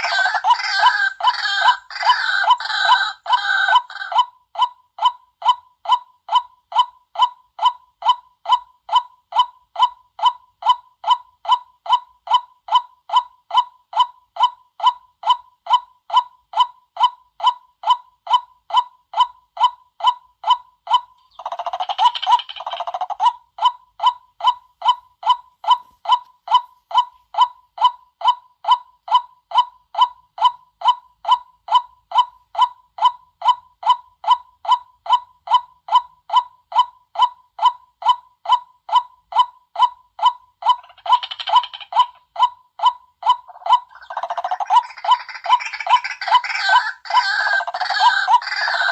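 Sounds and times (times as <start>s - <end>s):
harsh bird calling: 43.5s - 48.9s
waterhen kwak calls: 43.5s - 48.9s.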